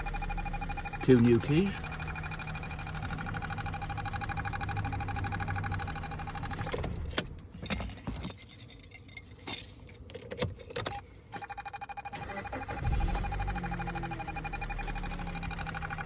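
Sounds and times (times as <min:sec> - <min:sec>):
rapidly pulsing electronic tone: 0:00.0 - 0:06.7, 0:11.4 - 0:16.0.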